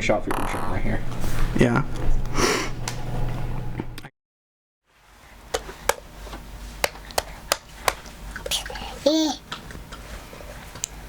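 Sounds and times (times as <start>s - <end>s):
low room hum: 4.9s - 11.0s.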